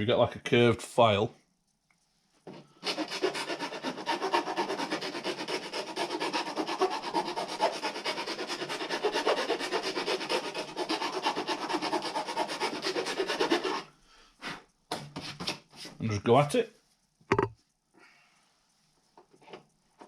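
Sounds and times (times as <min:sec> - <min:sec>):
hand file rasping: 0:02.8 - 0:13.9, 0:14.5 - 0:16.0.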